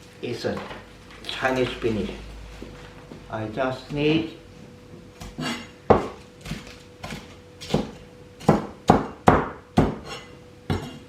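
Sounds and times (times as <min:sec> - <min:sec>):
knife chopping on cutting board: 0:05.2 - 0:11.0.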